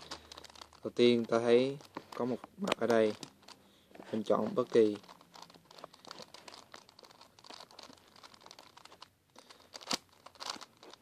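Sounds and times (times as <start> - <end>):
puzzle cube clicking and rattling: 0.0 - 11.0.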